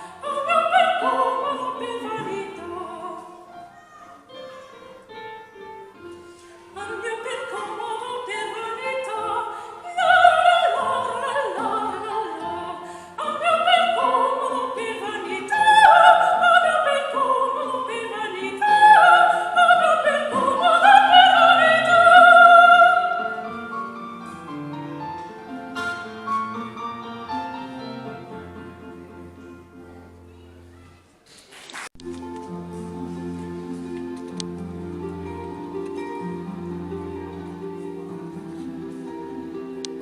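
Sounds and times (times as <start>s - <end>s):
operatic singing with vibrato: 0.0s - 5.2s, 6.6s - 23.9s
instrumental accompaniment: 0.0s - 9.2s, 20.0s - 30.8s, 32.0s - 40.0s.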